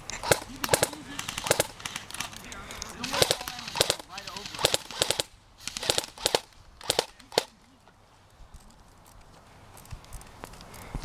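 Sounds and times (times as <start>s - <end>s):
airsoft guns firing bursts: 0.0s - 7.7s.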